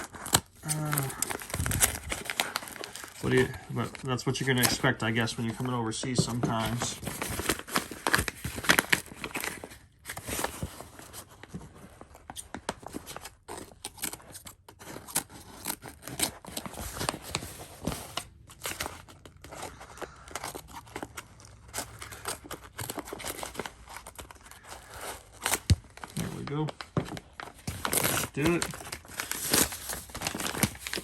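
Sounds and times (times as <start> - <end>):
packaging crinkling and tearing: 0.0 - 31.0.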